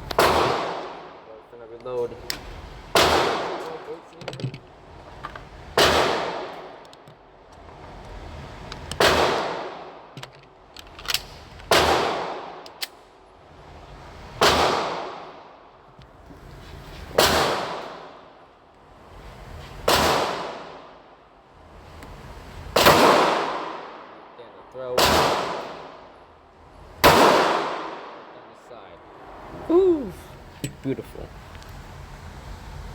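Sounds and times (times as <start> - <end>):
pistol shots echoing: 0.2 - 1.1, 2.9 - 3.9, 5.8 - 6.8, 9.0 - 9.9, 11.7 - 12.7, 22.8 - 24.0, 25.0 - 26.0, 27.0 - 28.2.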